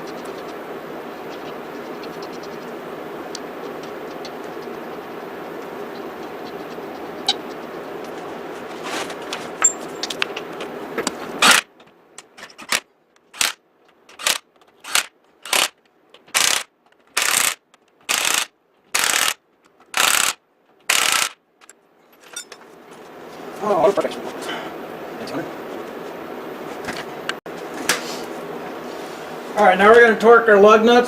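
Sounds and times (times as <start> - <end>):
steady hum: 0.0 - 31.0
impact wrench bursts: 11.4 - 11.7, 12.6 - 21.4.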